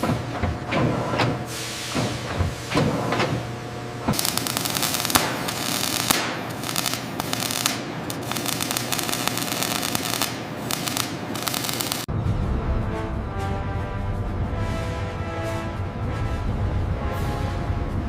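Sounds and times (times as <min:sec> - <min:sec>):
crackling hiss with sharp clicks: 0:04.2 - 0:12.1
low background music: 0:12.1 - 0:18.0.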